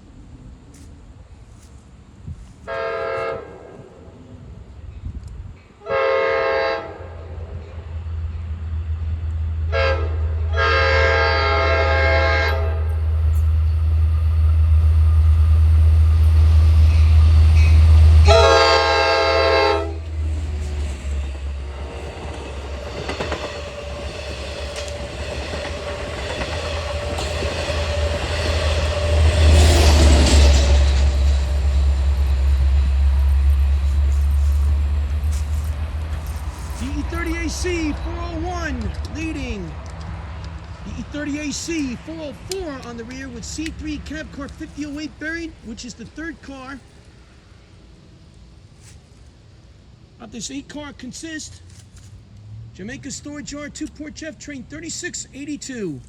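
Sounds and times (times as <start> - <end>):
locomotive air horn blasts: 2.6 - 3.9, 5.8 - 7.4, 9.7 - 13.1, 16.9 - 20.8
diesel engine rumble: 6.4 - 56.0
train wheels clattering on rails: 20.0 - 41.1.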